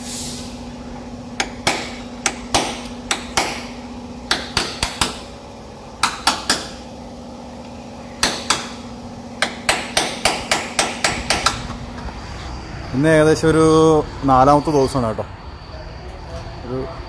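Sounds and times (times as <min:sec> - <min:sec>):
steady low hum: 0:00.0 - 0:17.0
hammer striking sheet metal: 0:01.4 - 0:05.3, 0:08.2 - 0:08.8, 0:09.4 - 0:11.8.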